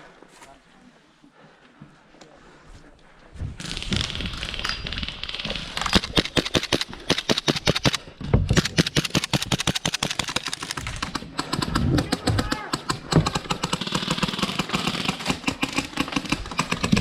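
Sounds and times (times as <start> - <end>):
airsoft guns firing: 3.6 - 17.0.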